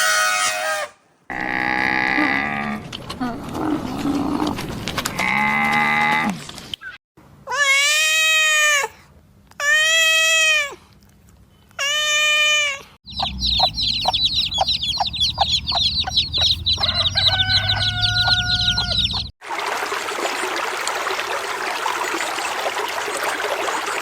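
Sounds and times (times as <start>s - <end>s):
chicks cheeping: 13.1s - 19.3s
hen clucking: 13.1s - 19.3s
long animal calls: 13.1s - 19.3s.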